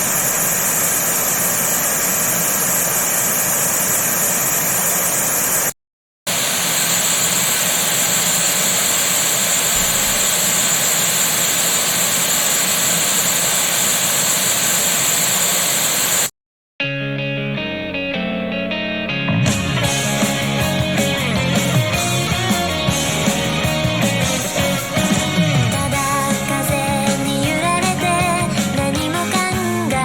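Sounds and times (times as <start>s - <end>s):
band music: 16.9s - 30.0s.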